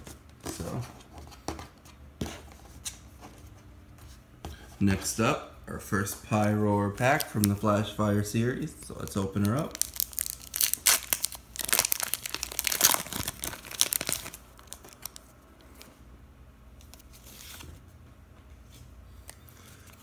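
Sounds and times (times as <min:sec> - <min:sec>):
foil wrapper crinkling: 0:09.2 - 0:15.9.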